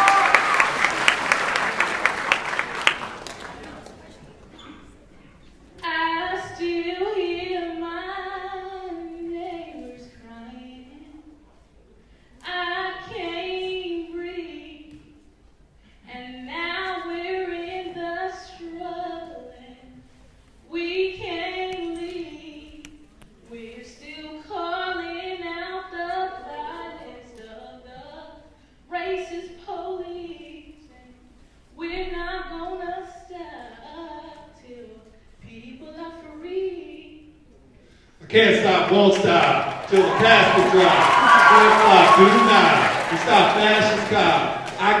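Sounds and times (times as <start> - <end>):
woman singing unaccompanied: 5.8 - 11.4, 20.7 - 37.4.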